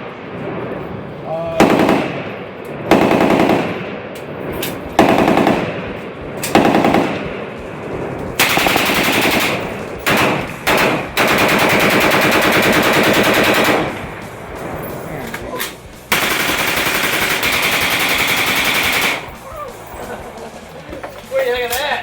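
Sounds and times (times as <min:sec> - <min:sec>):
machine gun firing bursts: 0:01.6 - 0:14.9, 0:16.1 - 0:19.4.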